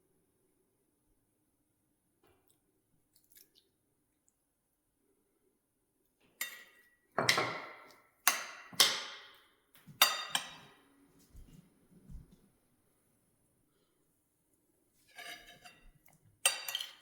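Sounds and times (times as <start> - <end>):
kitchenware clinking: 6.4 - 9.4, 10.0 - 10.8, 15.1 - 17.0.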